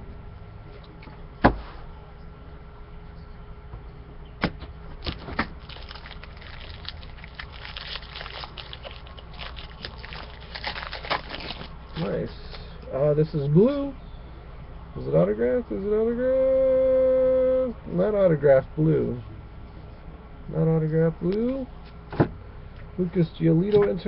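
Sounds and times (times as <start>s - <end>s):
steady low hum: 0.0s - 24.0s
cards rustling: 5.1s - 12.2s.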